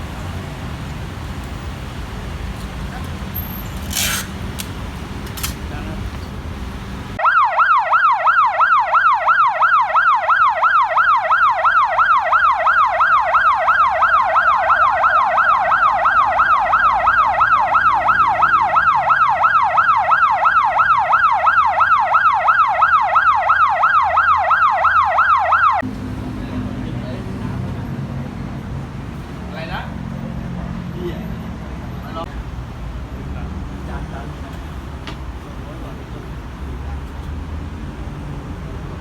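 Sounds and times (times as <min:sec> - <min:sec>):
electronic siren yelp tone: 0:07.2 - 0:25.8.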